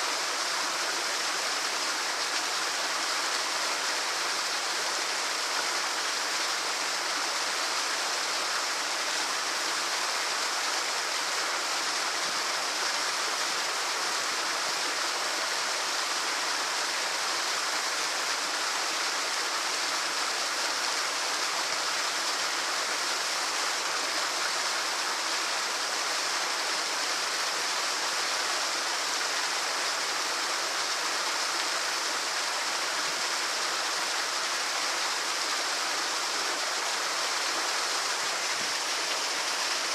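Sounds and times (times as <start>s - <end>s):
small waterfall rushing: 0.0s - 39.9s.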